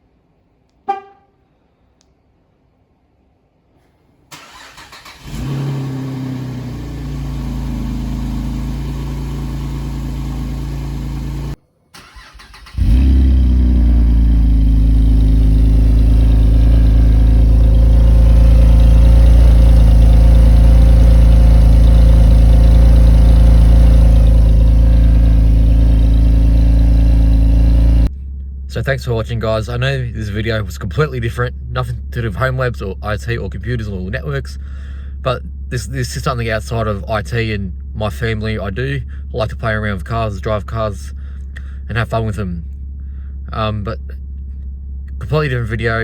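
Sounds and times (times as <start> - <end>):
car engine cranking and idling: 4.3 - 46.0
loud car engine idling: 5.4 - 11.6, 12.8 - 29.0, 34.5 - 35.7, 41.1 - 41.9, 42.7 - 43.5.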